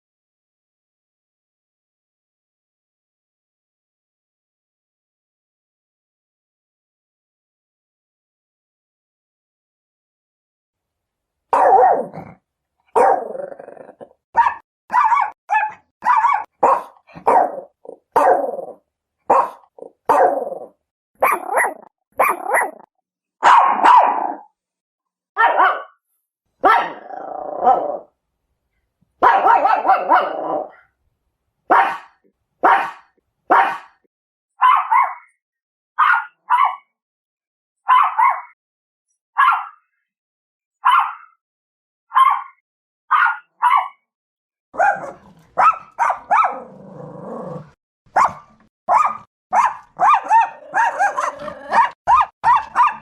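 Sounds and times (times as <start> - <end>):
small dog barking: 11.5 - 13.5, 14.4 - 24.5, 25.4 - 26.0, 26.6 - 28.1, 29.2 - 30.8, 31.7 - 34.0, 34.6 - 35.3, 36.0 - 36.9, 37.9 - 38.6, 39.4 - 39.8, 40.8 - 41.3, 42.1 - 44.0, 44.8 - 53.0
dog snarling: 12.0 - 12.4, 13.1 - 14.1, 44.8 - 48.4, 50.0 - 52.0.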